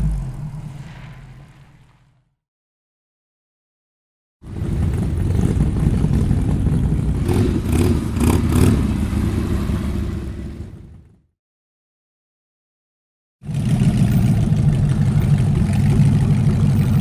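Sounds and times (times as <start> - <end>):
car engine rough rumble: 0.0 - 2.2, 4.4 - 11.2, 13.4 - 17.0.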